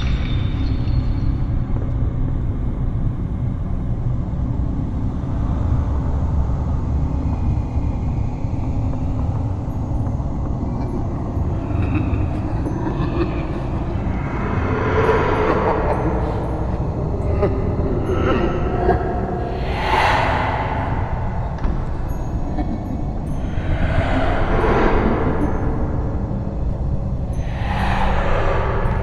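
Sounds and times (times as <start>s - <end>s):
deep rumbling drone: 0.0s - 29.0s
high hissing noise: 19.4s - 22.2s.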